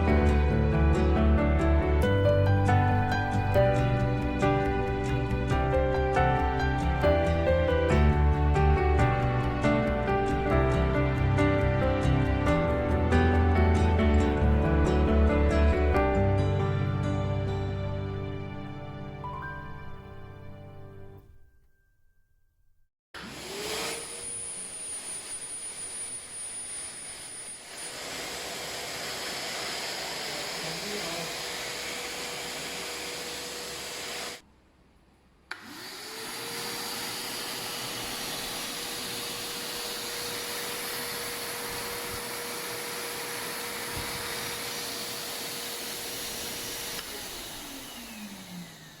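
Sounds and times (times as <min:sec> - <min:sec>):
vacuum cleaner motor whine: 0:23.2 - 0:34.4, 0:35.5 - 0:49.0.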